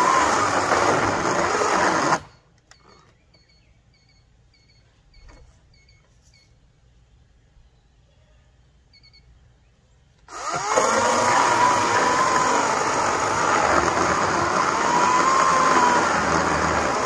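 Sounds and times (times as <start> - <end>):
electric chainsaw cutting wood: 0.0 - 2.3, 10.3 - 17.0
faint high double chirps: 2.7 - 6.6.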